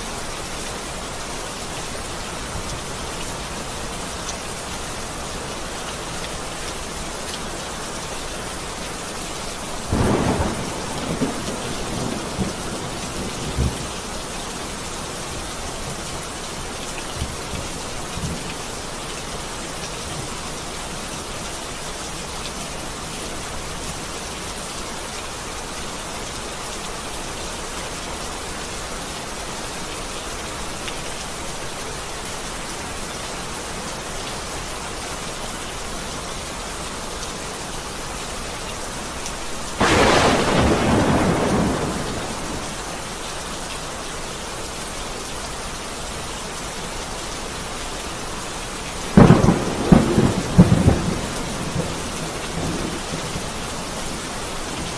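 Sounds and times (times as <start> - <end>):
heavy rainfall: 0.0 - 54.9
thunderclap: 39.8 - 42.8.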